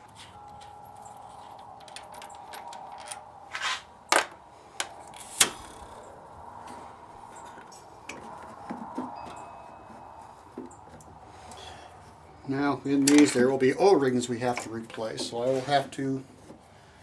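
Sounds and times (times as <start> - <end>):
hand tools clicking on metal: 0.0 - 6.0.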